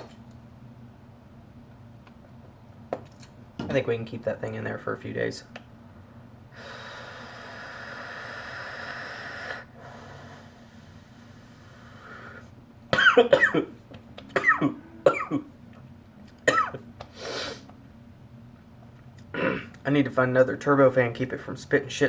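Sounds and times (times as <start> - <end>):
breathy hiss: 6.5 - 12.6, 17.1 - 17.8
man coughing: 13.0 - 15.5, 16.4 - 16.9, 19.3 - 19.8.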